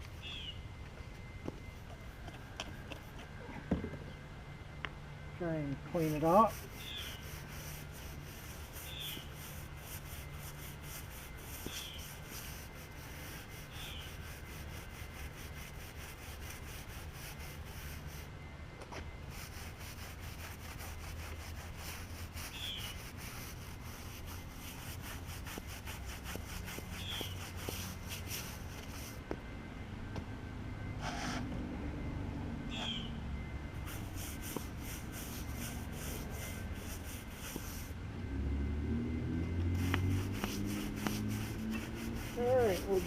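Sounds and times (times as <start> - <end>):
scrub brush scrubbing tire: 5.9 - 18.3, 19.2 - 29.2, 33.7 - 38.0, 39.6 - 43.0.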